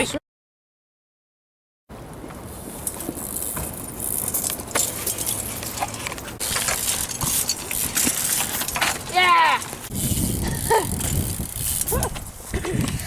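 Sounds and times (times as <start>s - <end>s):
chain clicking and rattling: 2.8s - 12.2s.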